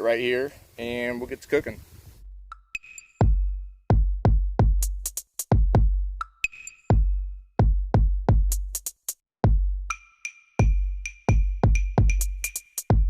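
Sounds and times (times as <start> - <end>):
booming bass drum beat: 3.2 - 10.0, 10.6 - 13.0
crisp high percussion hits: 9.9 - 13.0.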